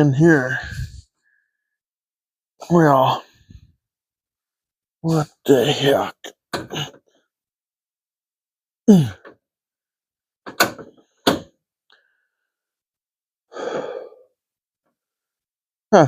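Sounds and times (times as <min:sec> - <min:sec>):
breathy sound: 0:00.4 - 0:01.8, 0:08.9 - 0:09.3, 0:13.5 - 0:14.4
man sighing low: 0:13.5 - 0:14.2.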